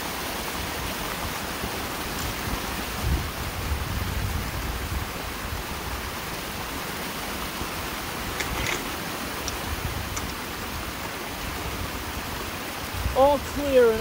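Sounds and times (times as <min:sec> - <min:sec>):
water rushing through culvert pipe: 0:00.0 - 0:14.0.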